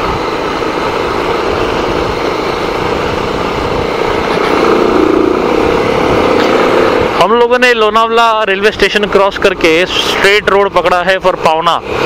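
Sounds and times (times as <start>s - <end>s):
motorcycle engine running: 0.0s - 8.0s
road noise: 0.0s - 12.0s
wind: 0.0s - 12.0s.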